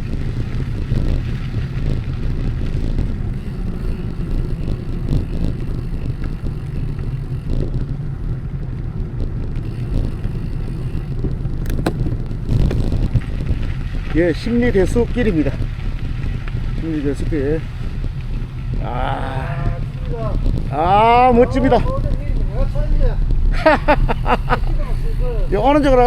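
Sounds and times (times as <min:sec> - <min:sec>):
bicycle tyre rumble: 0:00.0 - 0:26.0
wind on microphone: 0:00.0 - 0:26.0
sharp clicks: 0:11.6 - 0:13.0.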